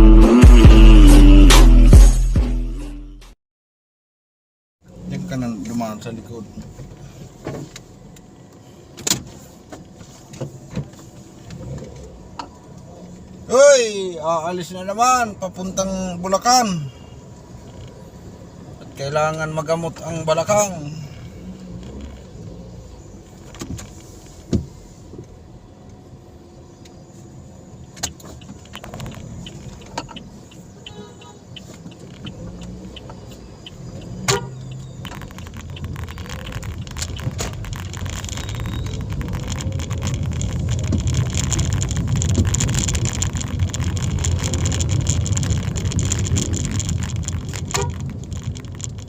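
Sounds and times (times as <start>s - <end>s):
car engine and road noise: 0.0s - 2.3s, 4.8s - 49.0s
sharp clicks and knocks: 28.0s - 30.8s, 31.6s - 49.0s.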